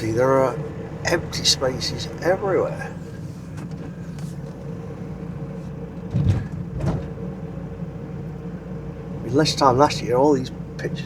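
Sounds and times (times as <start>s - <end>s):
van engine and road rumble: 0.0s - 11.0s
thump: 6.1s - 7.2s.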